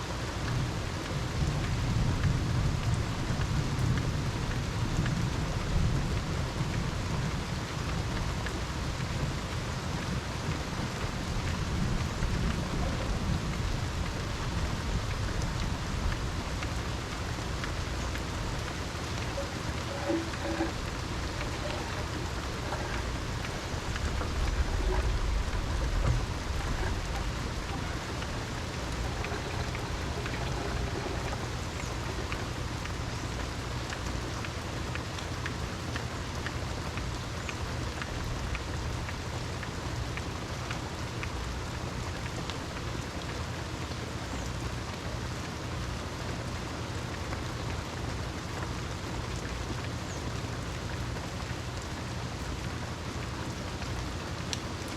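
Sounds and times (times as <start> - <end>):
heavy rain: 0.0 - 54.9
raindrops ticking: 0.1 - 54.9
low rumble of thunder: 0.5 - 34.3.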